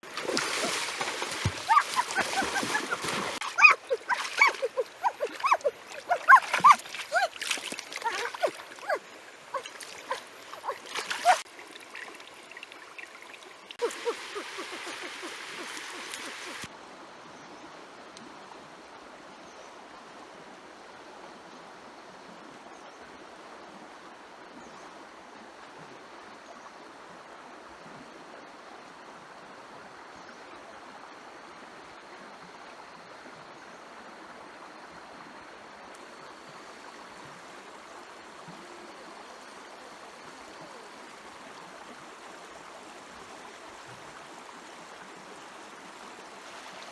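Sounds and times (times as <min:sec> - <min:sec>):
stream water flowing: 0:00.0 - 0:16.7, 0:31.3 - 0:46.9.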